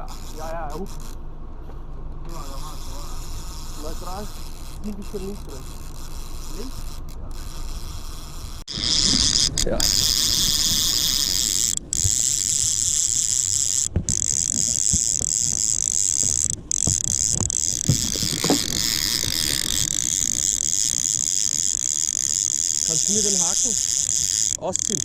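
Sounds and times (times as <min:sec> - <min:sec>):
fishing reel whirring and ratcheting: 0:00.0 - 0:01.2, 0:02.3 - 0:25.0.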